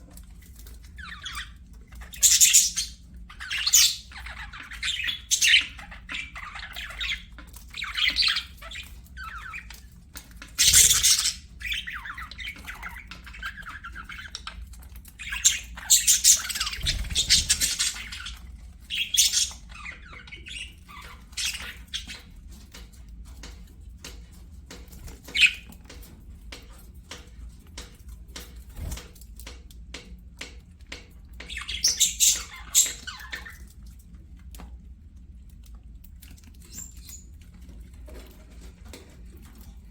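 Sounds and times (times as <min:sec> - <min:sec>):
budgerigars chattering: 0:01.0 - 0:09.8, 0:10.6 - 0:22.3, 0:25.3 - 0:25.7, 0:31.5 - 0:33.7
light clicks and taps: 0:21.6 - 0:31.8.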